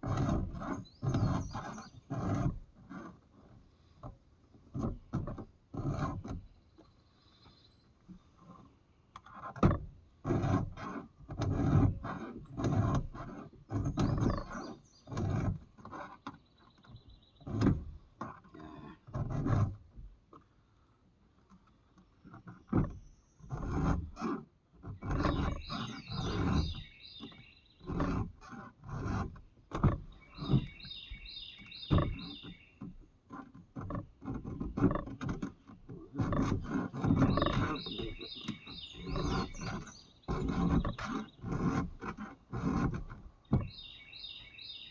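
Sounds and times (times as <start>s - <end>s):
file rasping on chainsaw teeth: 0.0s - 3.2s, 10.2s - 16.2s, 23.5s - 29.4s, 33.3s - 43.8s
birds chirping: 25.0s - 28.0s, 30.1s - 32.9s, 37.0s - 41.5s, 43.5s - 44.9s.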